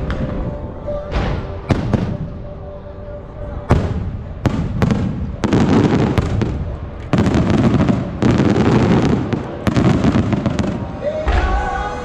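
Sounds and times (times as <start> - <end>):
music: 0.0 - 12.0
fireworks bursting and crackling: 3.7 - 11.9.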